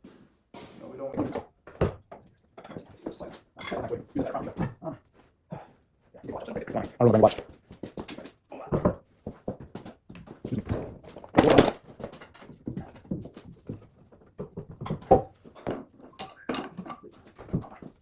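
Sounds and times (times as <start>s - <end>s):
irregular knocks and clunks: 7.3s - 18.0s.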